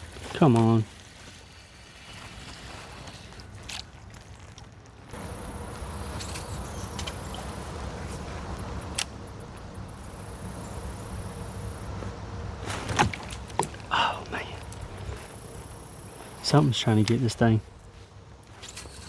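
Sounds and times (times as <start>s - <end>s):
low steady rumble: 5.1s - 18.6s
high-pitched insect buzzing: 5.2s - 7.8s, 8.5s - 11.9s.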